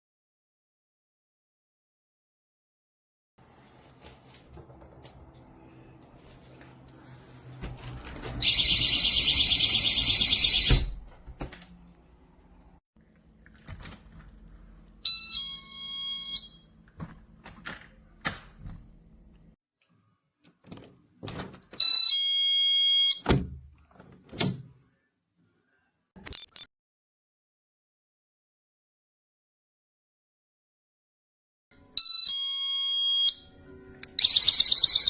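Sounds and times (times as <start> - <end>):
shrill warbling alarm siren: 8.4 - 11.0.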